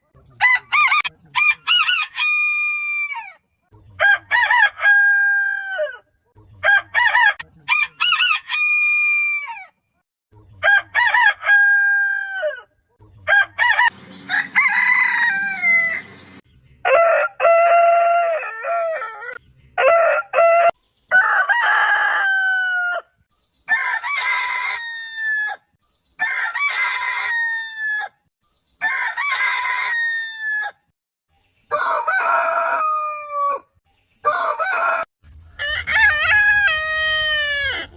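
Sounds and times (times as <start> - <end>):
roosters crowing: 0.4 - 3.4, 4.0 - 9.7, 10.6 - 28.2, 28.8 - 30.9, 31.7 - 37.9.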